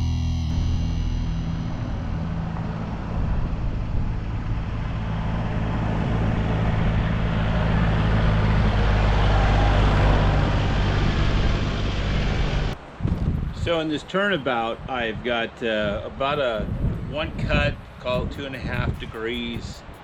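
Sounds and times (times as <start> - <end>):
engine humming: 0.0 - 13.5
broad rushing noise: 1.2 - 20.0.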